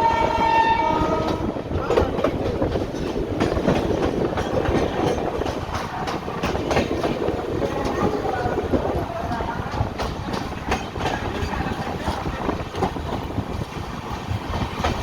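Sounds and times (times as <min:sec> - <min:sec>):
multi-note train horn: 0:00.0 - 0:01.7
train coaches rolling: 0:00.0 - 0:15.0
wheels clattering over rail joints: 0:01.8 - 0:15.0.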